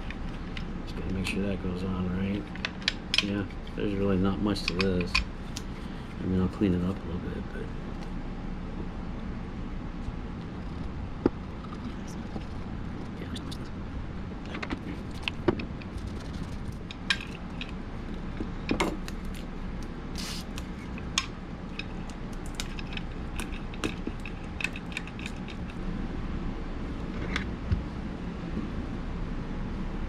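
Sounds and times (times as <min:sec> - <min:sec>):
low background rumble: 0:00.0 - 0:30.0
short hiss: 0:20.2 - 0:20.5.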